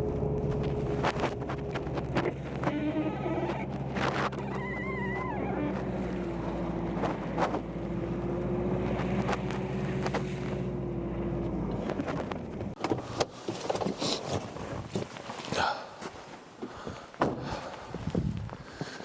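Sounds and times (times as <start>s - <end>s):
camper van engine running: 0.0s - 15.0s.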